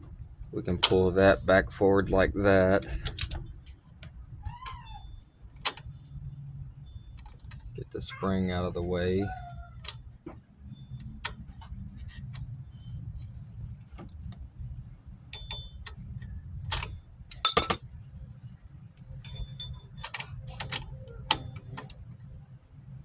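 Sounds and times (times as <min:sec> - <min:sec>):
metal springs clicking and clinking: 0:16.7 - 0:17.8
metal hardware rattling: 0:16.8 - 0:17.8.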